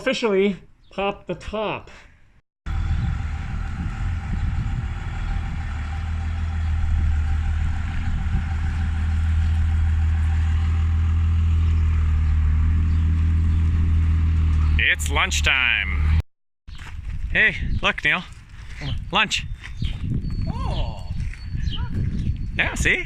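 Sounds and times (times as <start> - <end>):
vehicle engine humming: 2.7 - 16.2.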